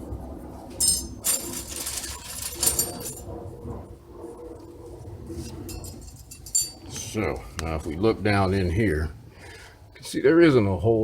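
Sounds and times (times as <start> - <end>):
small metal parts clinking: 0.8 - 3.3, 5.7 - 6.8.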